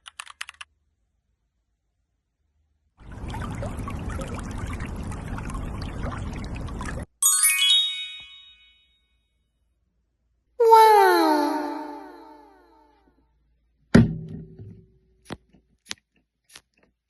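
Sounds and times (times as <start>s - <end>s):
liquid pouring: 3.0s - 7.1s
bright ding: 7.2s - 9.0s.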